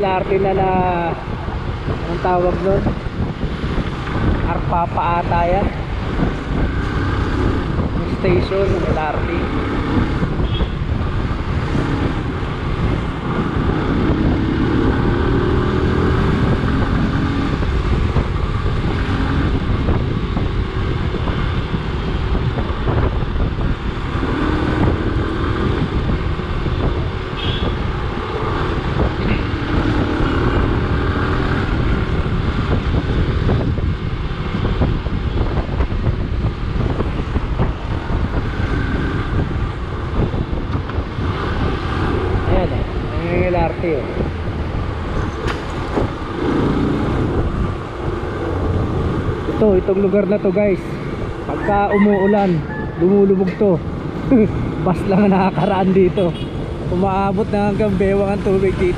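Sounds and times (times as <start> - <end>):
wind noise on microphone: 0.0 - 58.9
motorcycle engine accelerating: 6.1 - 50.1.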